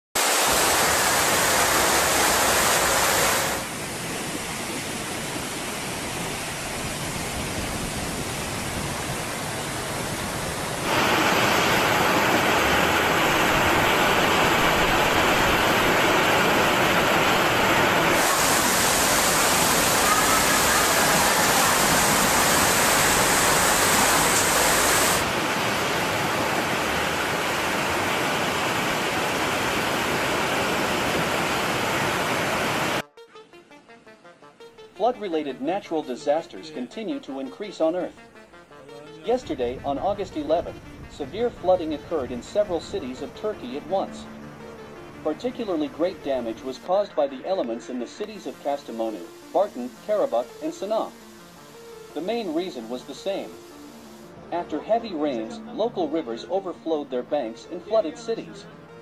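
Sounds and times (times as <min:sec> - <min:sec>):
rushing floodwater roar: 0:00.2 - 0:33.0, 0:41.2 - 0:55.2.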